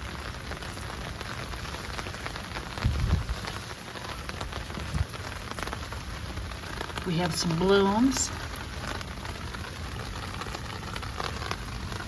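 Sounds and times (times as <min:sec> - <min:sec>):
steady rain falling: 0:00.0 - 0:12.0.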